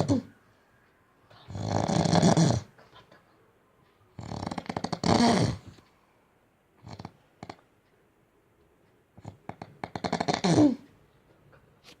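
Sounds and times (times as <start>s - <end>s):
man snoring: 4.2s - 5.6s.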